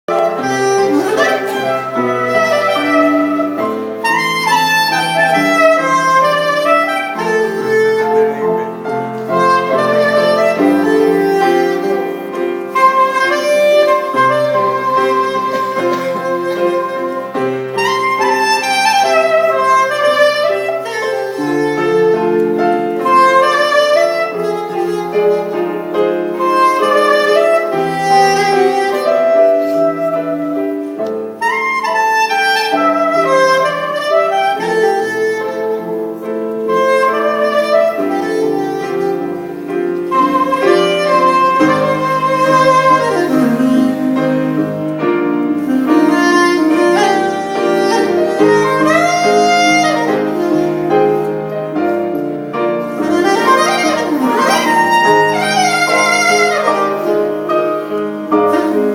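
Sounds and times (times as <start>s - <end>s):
piano and keyboard chords: 0.0s - 58.9s
saxophone playing slow melody: 0.0s - 58.9s.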